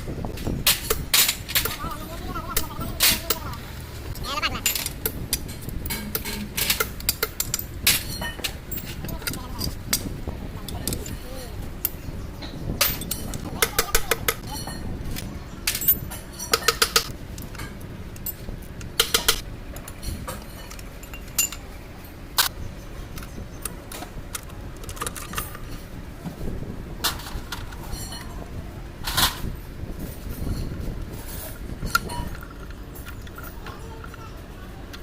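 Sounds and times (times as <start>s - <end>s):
metallic clinks and knocks: 4.5s - 15.0s, 15.6s - 22.5s.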